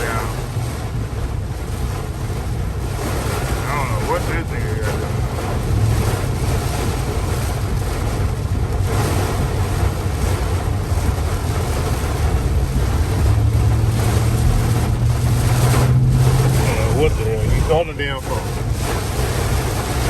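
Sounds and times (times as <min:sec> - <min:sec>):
low engine hum: 0:00.0 - 0:20.0
rain hissing: 0:00.0 - 0:20.0
tyres on wet road: 0:00.0 - 0:20.0.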